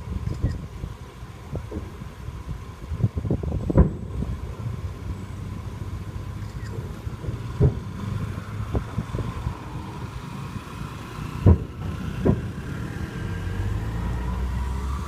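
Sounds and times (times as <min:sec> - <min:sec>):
steady low rumble: 0:00.0 - 0:13.5
fireworks booming: 0:03.0 - 0:04.9, 0:05.7 - 0:09.6, 0:11.1 - 0:12.9.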